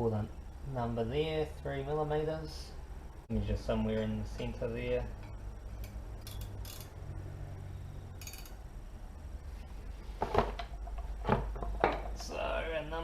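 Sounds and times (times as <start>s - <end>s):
low steady hum: 0.0s - 13.0s
metallic clicks and scrapes: 5.8s - 7.0s, 8.2s - 8.6s.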